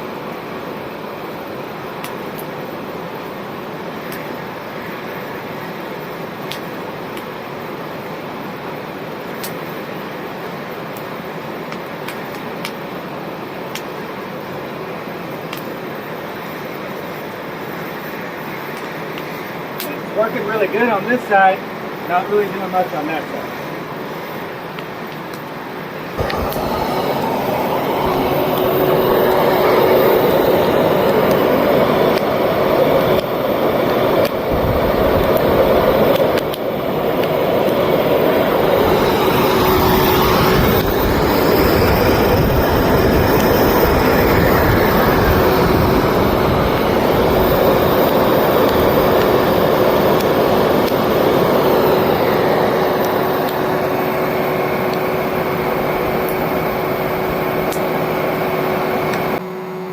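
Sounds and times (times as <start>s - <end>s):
loud rush of air: 25.6s - 59.4s
vacuum motor whine: 25.9s - 59.9s.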